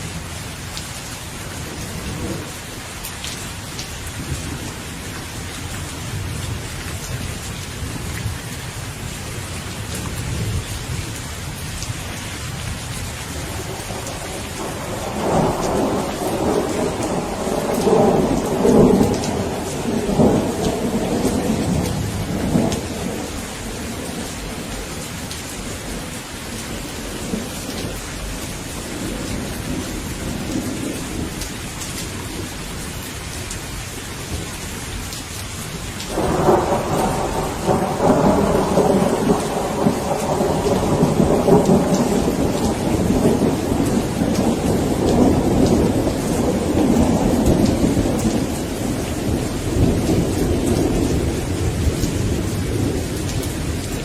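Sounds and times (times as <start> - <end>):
steady rain: 0.0 - 54.0
rolling thunder: 13.4 - 28.0, 36.0 - 54.0.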